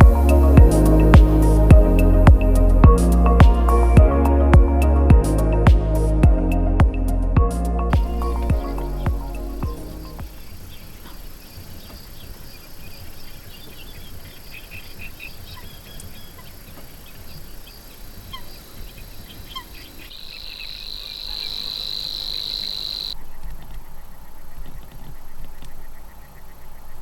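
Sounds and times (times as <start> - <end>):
insects chirping: 7.9 - 27.0
loud insect buzz: 19.8 - 23.2.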